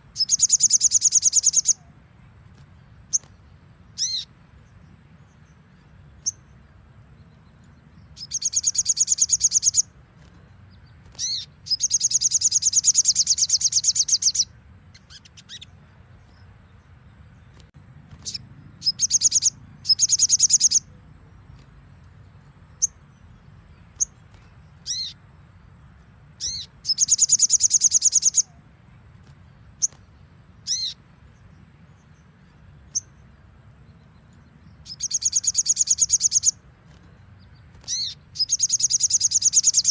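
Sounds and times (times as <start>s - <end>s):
bird trilling: 0.2s - 1.9s, 4.0s - 4.3s, 8.2s - 9.9s, 11.1s - 15.7s, 18.2s - 21.0s, 24.8s - 25.2s, 26.4s - 28.6s, 30.6s - 31.0s, 34.8s - 36.6s, 37.8s - 39.9s.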